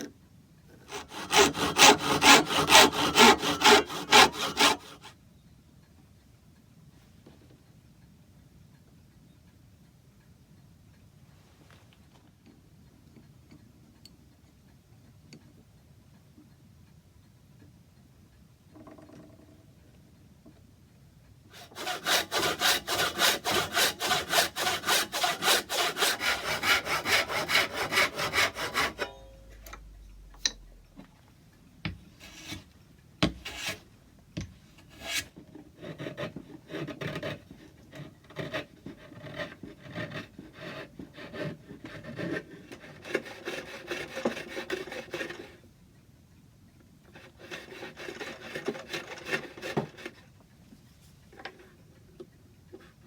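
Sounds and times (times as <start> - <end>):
hand saw cutting wood: 0.8 - 5.1, 21.5 - 30.6, 32.2 - 33.9, 34.8 - 45.6, 47.1 - 50.3.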